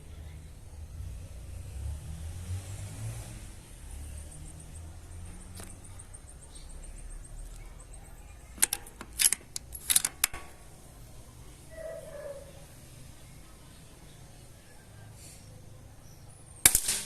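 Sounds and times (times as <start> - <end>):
faint high chirping: 3.8 - 9.1, 10.4 - 16.7
sharp clicks and knocks: 5.3 - 6.1, 7.4 - 10.8, 16.7 - 17.0.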